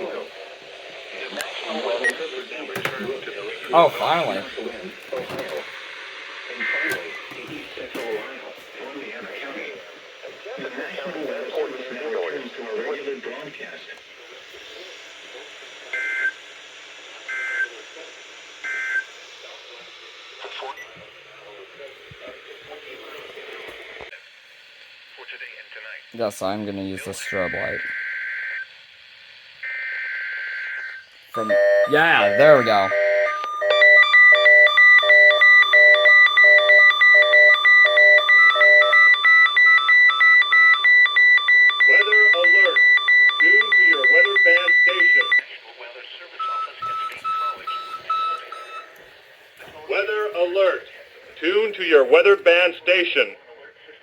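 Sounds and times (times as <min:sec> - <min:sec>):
radio hiss: 0:00.0 - 0:28.0, 0:28.6 - 0:54.0
two-tone digital data bursts: 0:31.4 - 0:45.4.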